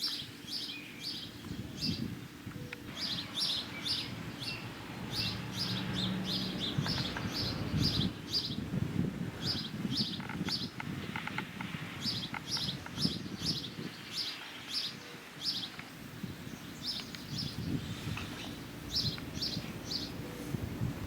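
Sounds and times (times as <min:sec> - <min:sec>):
small bird chirping: 0:00.0 - 0:08.6, 0:09.4 - 0:20.6.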